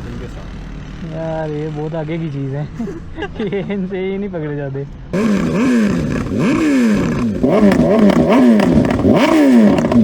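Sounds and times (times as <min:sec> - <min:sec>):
wind and road noise: 0:00.0 - 0:10.0
motorcycle engine revving: 0:05.1 - 0:10.0.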